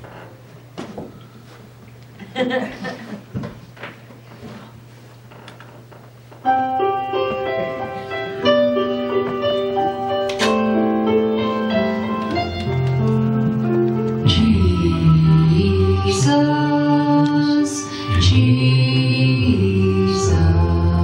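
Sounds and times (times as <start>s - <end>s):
piano playing held chords: 6.4s - 21.0s.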